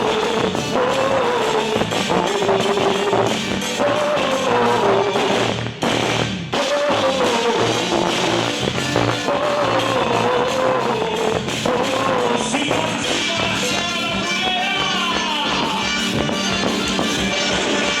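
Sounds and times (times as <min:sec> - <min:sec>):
drum kit beat: 0:00.0 - 0:18.0
gliding lead melody: 0:13.0 - 0:18.0.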